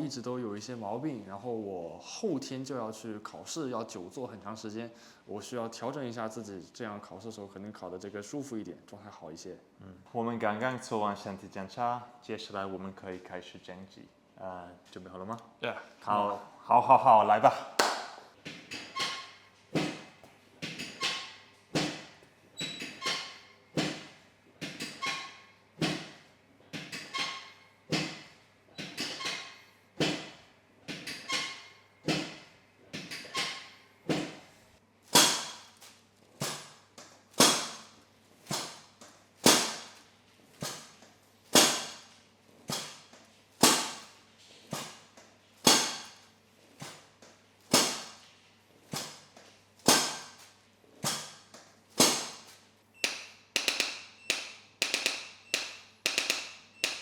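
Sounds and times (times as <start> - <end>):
sharp ringing knocks: 53.0 - 57.0.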